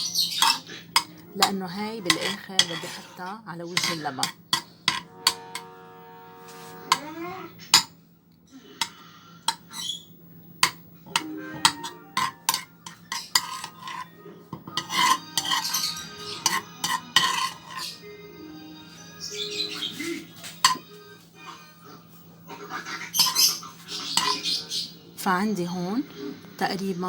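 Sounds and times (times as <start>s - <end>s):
spoon clinking and scraping a pan: 0.0s - 5.8s, 7.7s - 7.9s, 8.8s - 10.0s, 10.6s - 18.0s, 19.5s - 21.7s, 23.1s - 24.6s.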